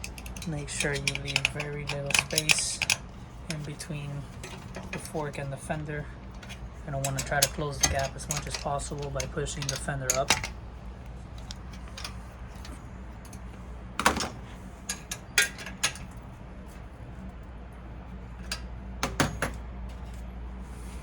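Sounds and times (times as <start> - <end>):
hand tools clicking on metal: 0.0 - 10.6.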